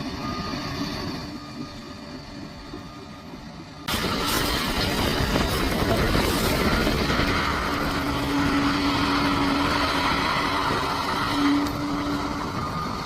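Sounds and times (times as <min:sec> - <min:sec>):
bulldozer diesel engine running: 0:00.0 - 0:13.0
steady whine: 0:00.0 - 0:13.0.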